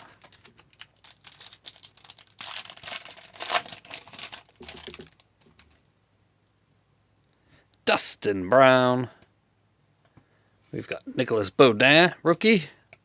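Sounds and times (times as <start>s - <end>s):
wrapper crinkling and tearing: 0.0s - 5.9s.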